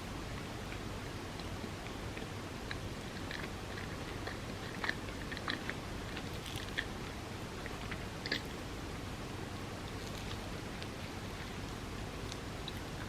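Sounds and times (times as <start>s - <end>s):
steady background hiss: 0.0s - 13.0s
mouth clicks from chewing: 2.2s - 6.9s.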